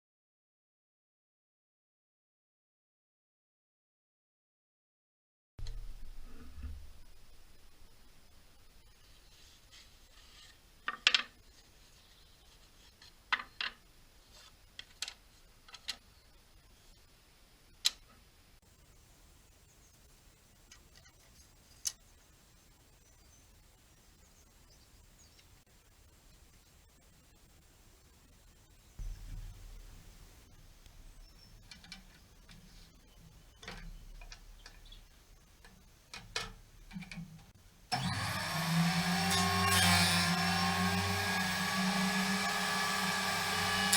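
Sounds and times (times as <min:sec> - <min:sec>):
wood and tools clicking: 0:10.8 - 0:11.4, 0:30.3 - 0:43.9
power tool spinning up: 0:37.9 - 0:43.9.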